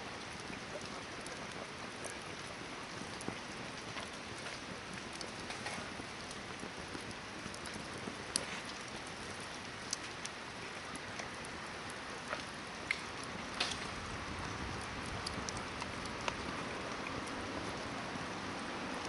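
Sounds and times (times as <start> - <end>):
campfire crackling and hissing: 0.0 - 19.0.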